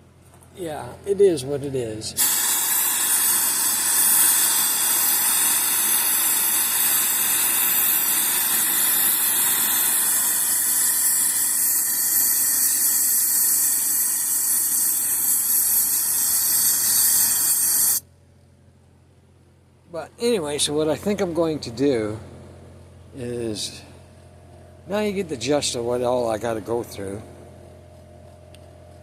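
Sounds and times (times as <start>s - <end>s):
forge air blower hissing: 0.6s - 18.0s.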